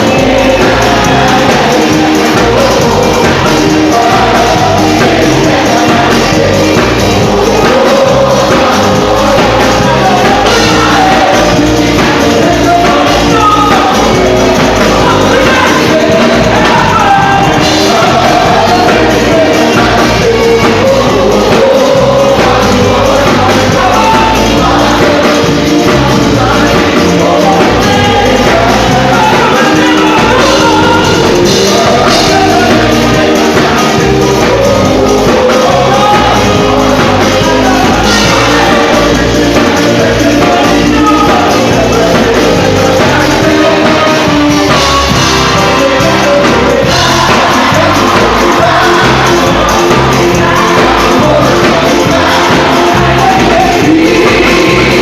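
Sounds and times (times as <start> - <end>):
gospel band playing: 0.0 - 55.0
people singing: 0.0 - 55.0.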